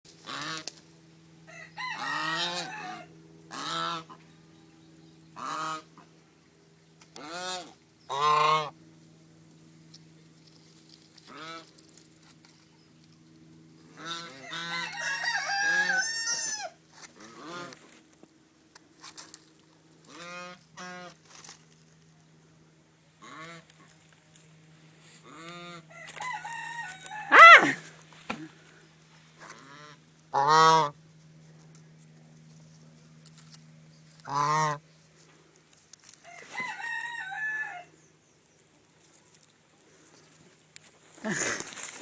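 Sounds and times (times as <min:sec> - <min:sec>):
geese honking: 0:01.5 - 0:04.2, 0:05.4 - 0:06.0, 0:07.2 - 0:08.8, 0:14.0 - 0:17.8, 0:25.2 - 0:27.8, 0:29.5 - 0:31.0, 0:34.3 - 0:34.8.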